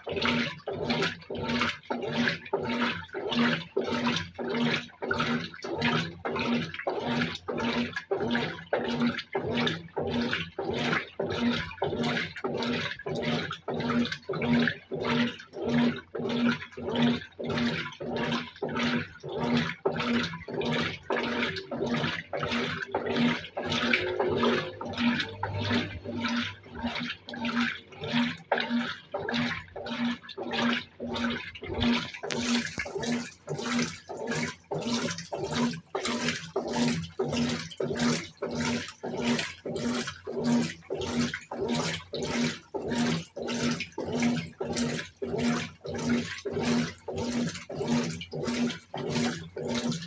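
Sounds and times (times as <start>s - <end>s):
washing machine agitating clothes: 0.0s - 50.0s.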